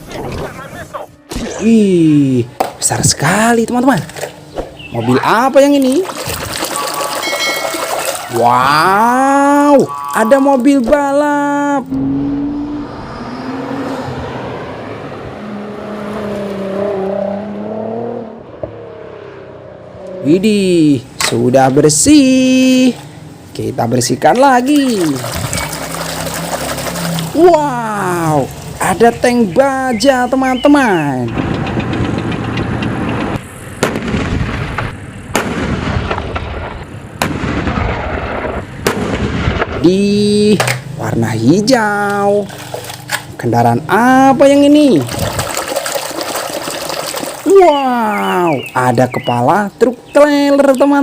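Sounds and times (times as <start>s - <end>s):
race car engine: 11.8s - 21.1s, 25.4s - 28.8s
tank cannon bangs: 31.3s - 39.8s.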